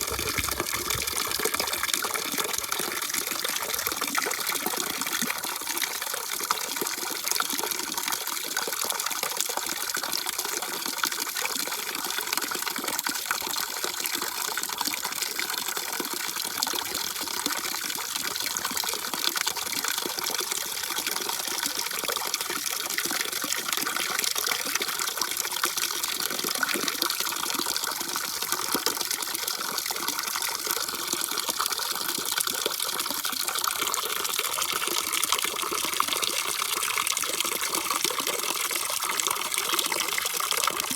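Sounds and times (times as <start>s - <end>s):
water rushing: 0.0s - 3.9s.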